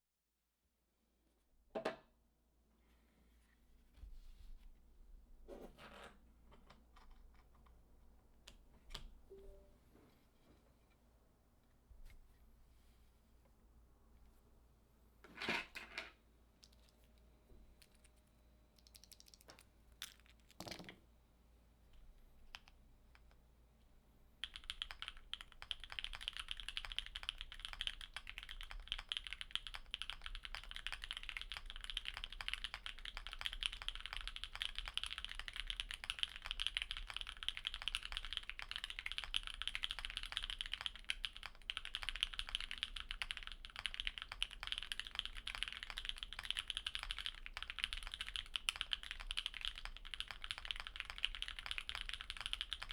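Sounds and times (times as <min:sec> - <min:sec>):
mechanical keyboard typing: 0:18.8 - 0:19.5, 0:24.4 - 0:52.9.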